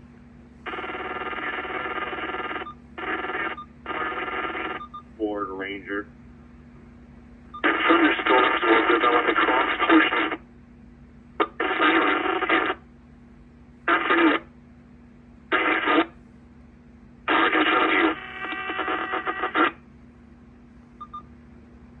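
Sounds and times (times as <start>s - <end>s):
faint steady hum and hiss: 0.0s - 22.0s
radio audio from scanner speaker: 0.7s - 6.1s, 7.6s - 10.5s, 11.4s - 12.9s, 13.9s - 14.5s, 15.5s - 16.2s, 17.3s - 19.8s.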